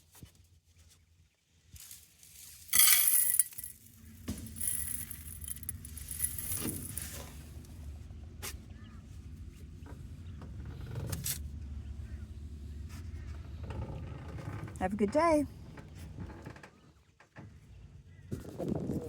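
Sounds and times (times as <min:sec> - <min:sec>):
clinking and rattling: 0:01.8 - 0:07.3.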